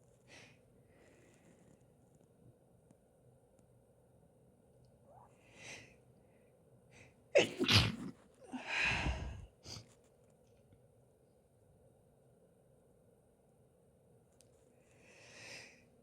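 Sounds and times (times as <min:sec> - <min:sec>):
woman sneezing: 0:07.4 - 0:09.8
breath in: 0:07.9 - 0:09.8
breathy exhale: 0:08.6 - 0:09.8.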